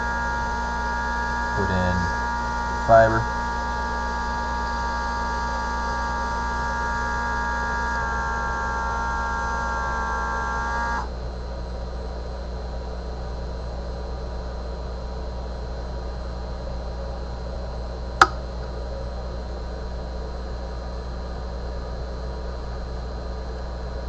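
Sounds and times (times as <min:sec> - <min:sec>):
low steady hum: 0:00.0 - 0:04.8
vacuum pump whining: 0:00.0 - 0:11.1.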